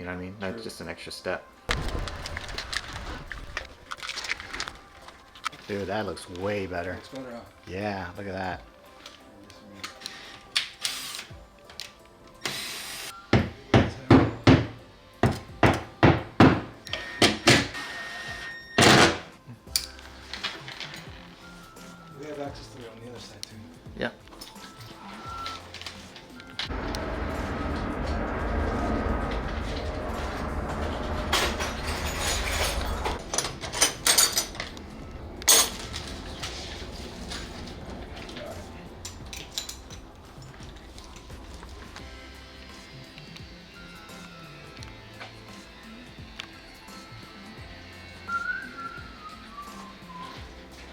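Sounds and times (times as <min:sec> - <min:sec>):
background music: 0:00.0 - 0:50.9
hard objects clinking and knocking: 0:29.8 - 0:42.1.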